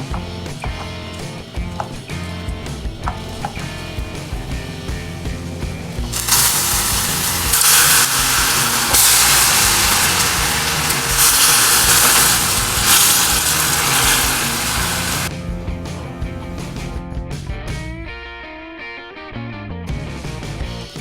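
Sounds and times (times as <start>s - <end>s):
background music: 0.0s - 17.9s
loud hissing: 3.6s - 15.3s.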